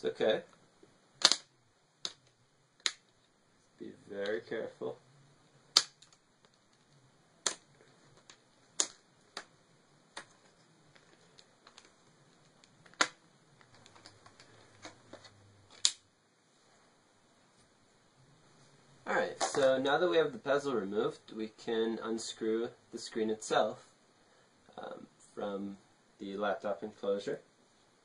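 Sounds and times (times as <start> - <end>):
plastic clips snapping: 1.2 - 3.1, 5.7 - 6.6, 7.4 - 9.5, 15.7 - 16.0.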